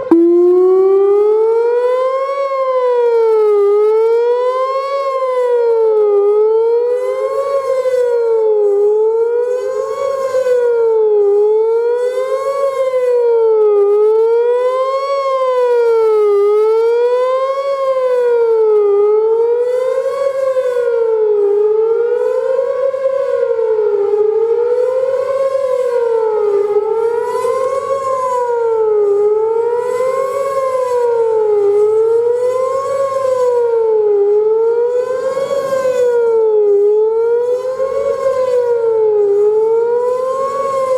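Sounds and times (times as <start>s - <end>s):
warning siren wailing: 0.0s - 3.7s, 16.9s - 40.9s.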